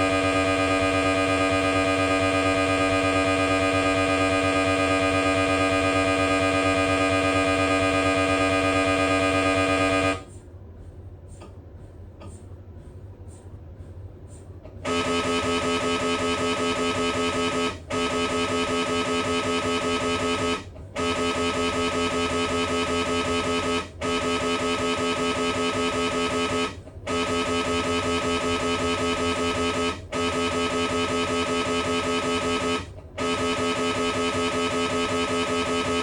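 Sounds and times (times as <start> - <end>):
mri scanner loud buzzing: 0.0 - 10.3, 14.8 - 36.0
mri scanner loud steady tone: 0.0 - 10.3, 14.8 - 36.0
low hum with faint ticks: 10.3 - 14.8.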